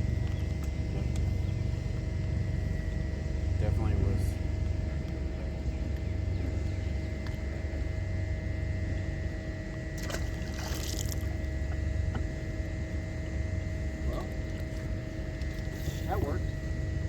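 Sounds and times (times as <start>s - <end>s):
boat engine rumble: 0.0s - 17.0s
faint constant hum: 0.0s - 17.0s
water splash: 10.0s - 11.3s.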